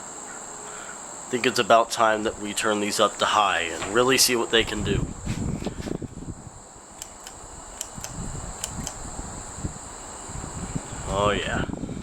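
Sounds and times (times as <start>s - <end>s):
ceiling fans running: 0.0s - 12.0s
crickets chirring: 0.0s - 12.0s
fan switch clicks: 6.9s - 9.2s.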